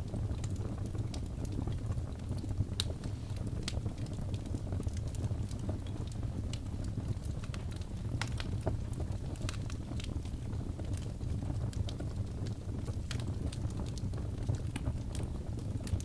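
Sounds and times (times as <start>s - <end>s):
low rumble of flames: 0.0s - 16.0s
wood fire pops and snaps: 0.0s - 16.0s.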